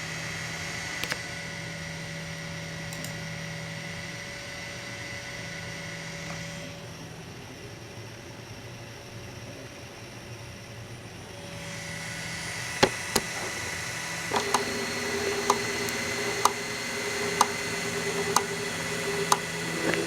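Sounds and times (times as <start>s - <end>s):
motor whine: 0.0s - 7.6s, 11.0s - 20.0s
fan whirring: 11.1s - 20.0s
sharp clicks: 14.3s - 20.0s.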